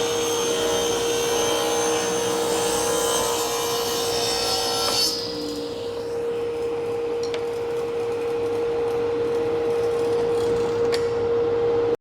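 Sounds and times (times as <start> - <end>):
table saw humming: 0.0 - 6.4.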